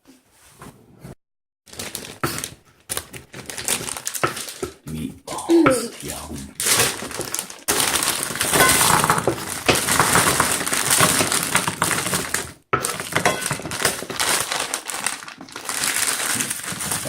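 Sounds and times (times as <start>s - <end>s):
dishes and utensils clinking: 8.5s - 10.4s, 12.8s - 13.9s.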